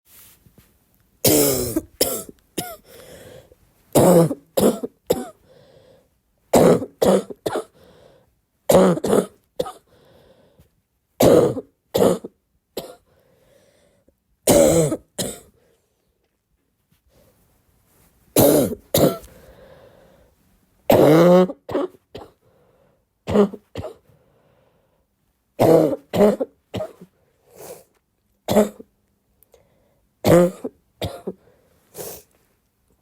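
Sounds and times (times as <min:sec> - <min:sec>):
person barking cough: 0:01.2 - 0:02.9, 0:04.0 - 0:05.4, 0:06.6 - 0:07.8, 0:08.7 - 0:09.9, 0:11.2 - 0:13.0, 0:14.5 - 0:15.5, 0:18.4 - 0:19.3, 0:20.9 - 0:22.4, 0:23.3 - 0:24.0, 0:25.6 - 0:27.1, 0:28.5 - 0:28.9, 0:30.2 - 0:31.4
faint noisy breath: 0:02.8 - 0:03.8, 0:05.4 - 0:06.2, 0:07.7 - 0:08.4, 0:09.8 - 0:10.8, 0:13.0 - 0:14.2, 0:19.2 - 0:20.4, 0:22.4 - 0:23.2, 0:24.0 - 0:25.2, 0:29.4 - 0:30.2, 0:31.3 - 0:32.6.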